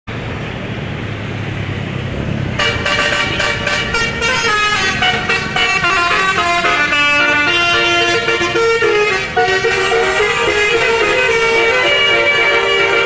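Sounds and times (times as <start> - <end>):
bus engine running: 0.1 - 13.0
multi-tone air horn tune: 2.6 - 13.0.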